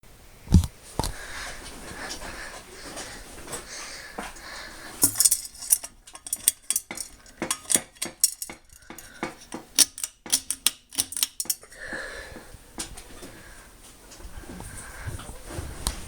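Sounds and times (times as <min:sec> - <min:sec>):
sharp clicks and clinks: 0:05.0 - 0:11.7.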